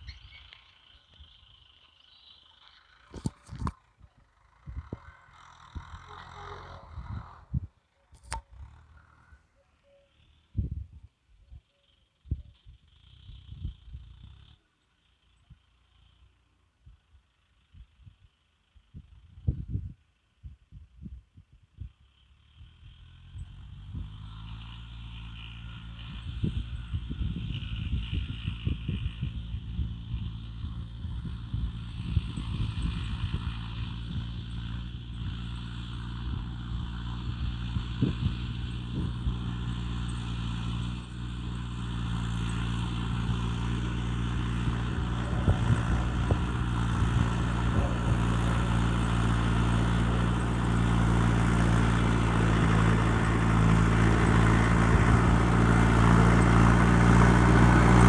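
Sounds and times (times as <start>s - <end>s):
tractor engine running: 0.0s - 10.5s, 22.3s - 58.0s.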